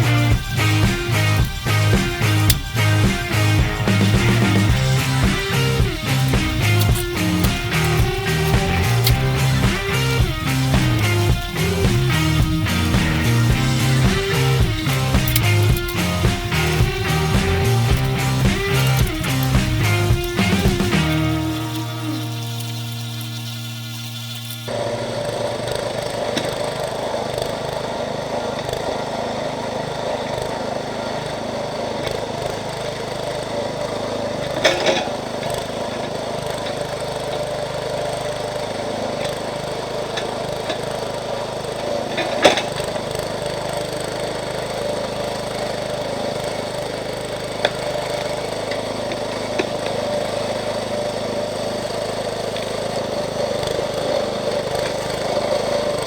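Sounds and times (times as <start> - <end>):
sharp cracks of stump digging: 0.0 - 24.8
small gas engine running: 0.0 - 56.0.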